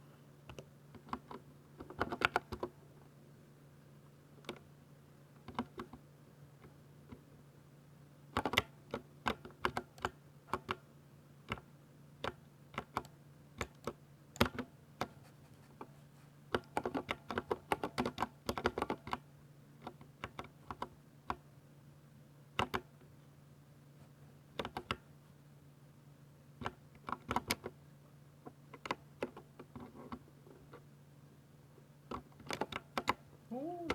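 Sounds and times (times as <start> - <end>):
faint steady hum: 0.0 - 33.9
mechanical keyboard typing: 1.0 - 2.7.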